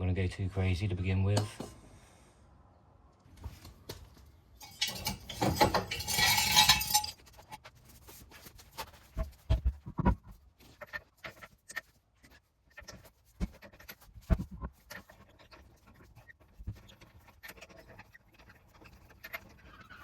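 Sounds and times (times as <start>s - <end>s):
metallic clinks: 4.6s - 7.2s
rattling and rustling: 4.6s - 11.8s.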